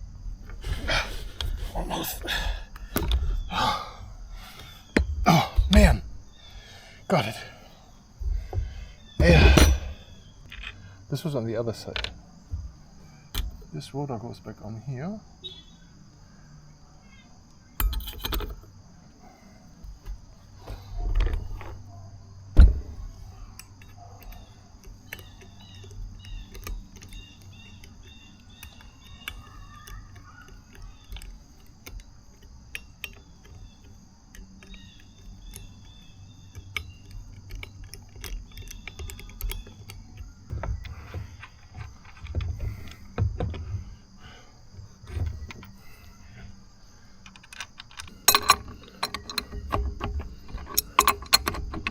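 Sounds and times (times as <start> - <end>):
metal parts and tools clinking: 9.2 - 10.8, 17.8 - 18.6, 23.5 - 43.7, 47.2 - 51.9.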